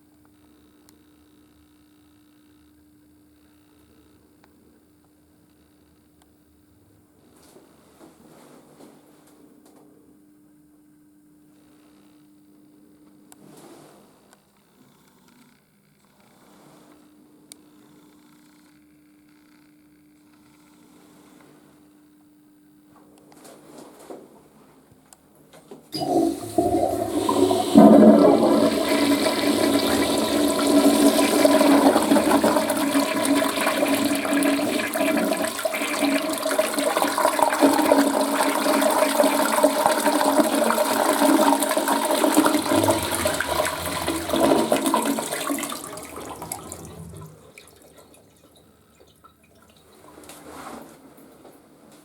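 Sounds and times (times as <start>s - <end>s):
toilet flushing: 26.0s - 50.4s.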